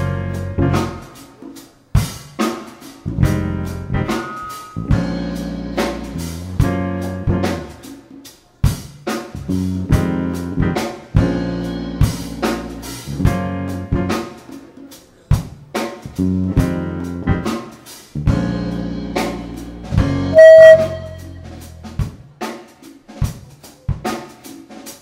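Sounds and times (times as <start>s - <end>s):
drum kit rimshots: 0.0s - 25.0s
live band playing: 0.0s - 25.0s
loud held high note: 20.3s - 21.6s.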